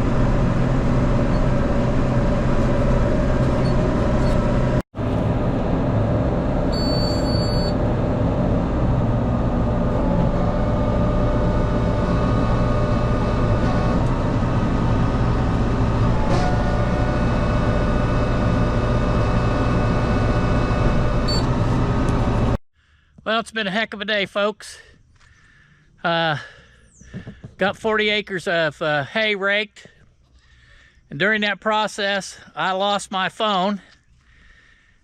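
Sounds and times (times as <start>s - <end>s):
tractor engine running: 0.0s - 22.6s
short high electronic beep: 6.7s - 7.8s.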